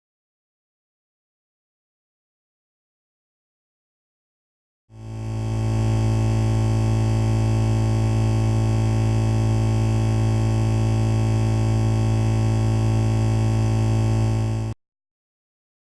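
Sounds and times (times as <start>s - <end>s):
electrical buzz hum: 5.0s - 14.8s.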